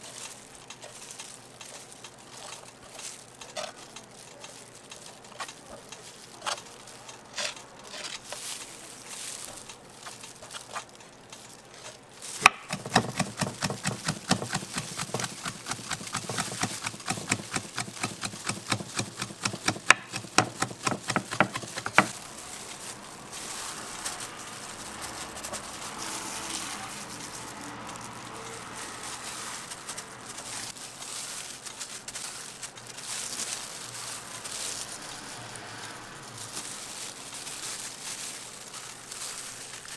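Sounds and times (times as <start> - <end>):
utensil tapping fast: 12.4 - 26.0.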